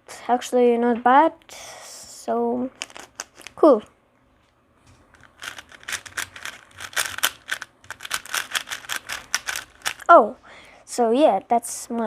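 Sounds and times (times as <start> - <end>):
puzzle cube plastic clicks: 2.8 - 3.6, 5.2 - 10.1.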